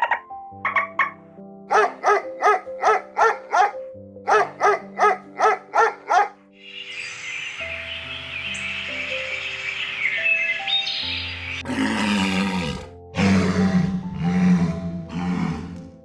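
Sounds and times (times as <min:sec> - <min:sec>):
background music: 0:00.0 - 0:16.0
dog barking: 0:01.7 - 0:06.4.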